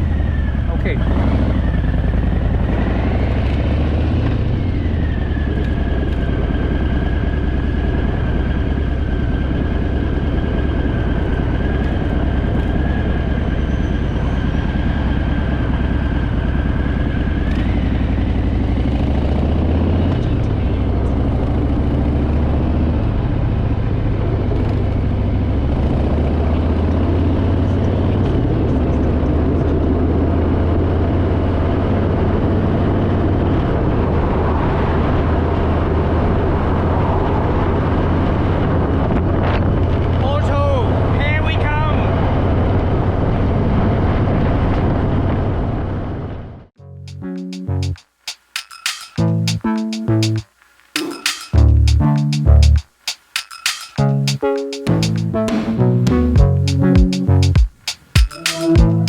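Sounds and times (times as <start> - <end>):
motorcycle engine running: 0.0 - 33.9
wind and road noise: 0.0 - 46.7.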